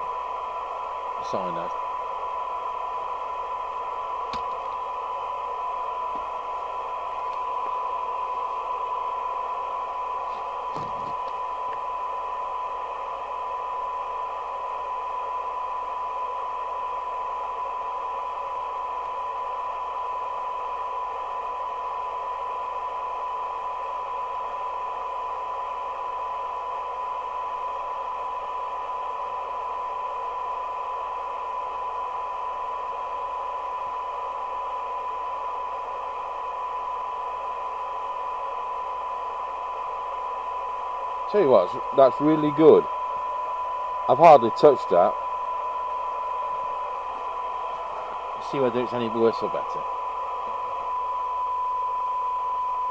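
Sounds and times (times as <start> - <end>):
receiver hiss: 0.0 - 23.2, 36.1 - 52.9
steady radio test tone: 0.0 - 52.9.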